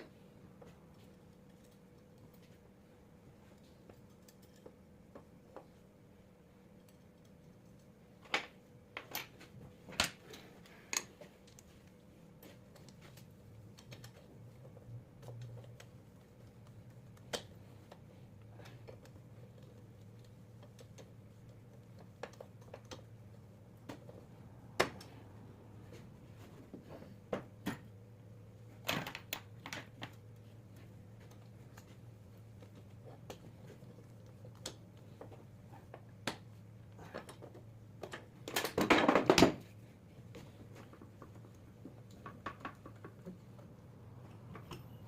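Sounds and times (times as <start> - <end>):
faint steady hum: 0.0 - 45.0
clicks and taps of tools: 40.3 - 45.0.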